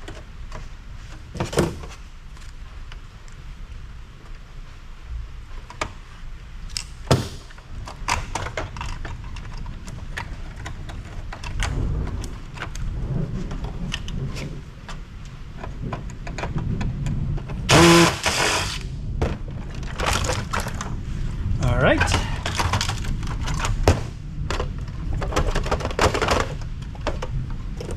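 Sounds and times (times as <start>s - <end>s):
tools and metal parts rattling: 22.0s - 23.9s.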